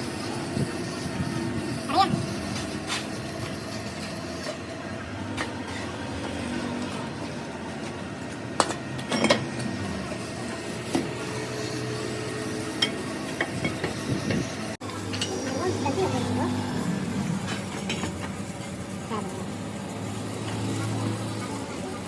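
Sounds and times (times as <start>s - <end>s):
metal tools clinking on metal: 8.6s - 9.7s, 14.9s - 15.7s.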